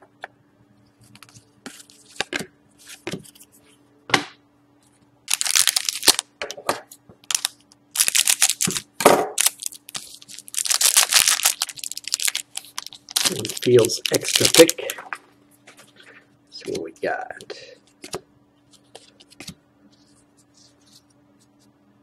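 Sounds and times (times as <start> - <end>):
foil wrapper tearing and crinkling: 5.3 - 6.2, 7.2 - 15.0.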